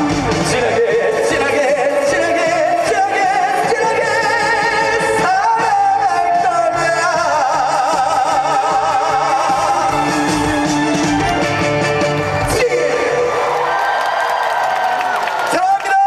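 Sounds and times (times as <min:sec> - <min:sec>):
man singing with vibrato: 0:00.0 - 0:11.2, 0:12.4 - 0:13.8
live band playing: 0:00.0 - 0:13.6.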